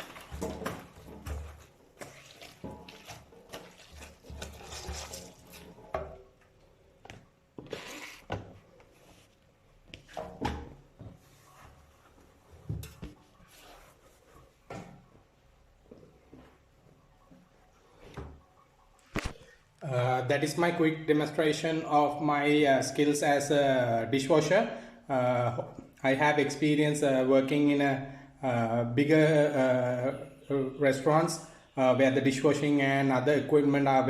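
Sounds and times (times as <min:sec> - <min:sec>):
tap water running: 0:00.0 - 0:08.5.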